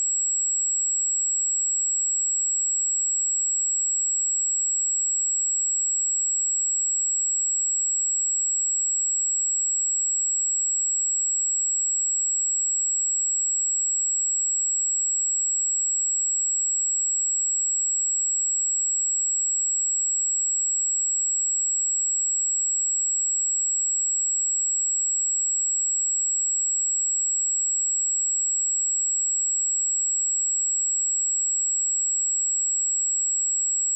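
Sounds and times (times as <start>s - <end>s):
high-pitched sine test tone: 15.8s - 33.9s.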